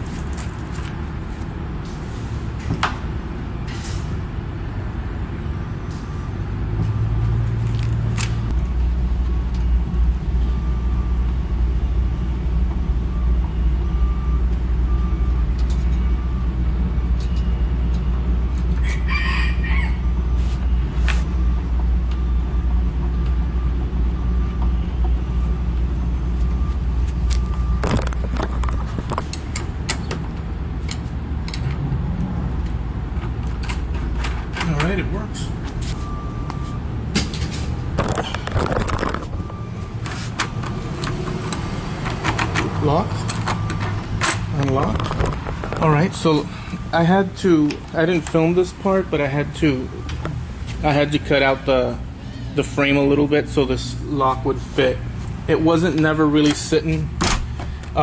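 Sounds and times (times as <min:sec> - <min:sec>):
rooster crowing: 0:18.8 - 0:20.1.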